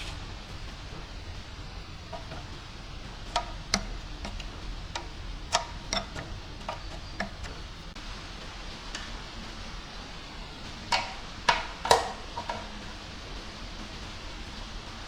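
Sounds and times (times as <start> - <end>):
tools and metal parts clicking: 2.1 - 2.6, 3.3 - 7.7.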